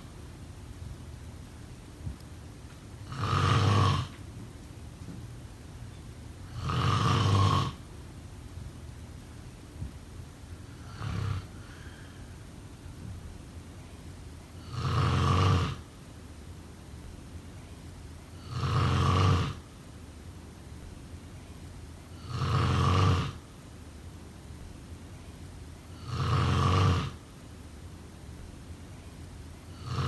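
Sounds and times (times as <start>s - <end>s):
person snoring: 3.0s - 4.2s, 6.5s - 7.8s, 10.8s - 12.2s, 29.7s - 30.0s.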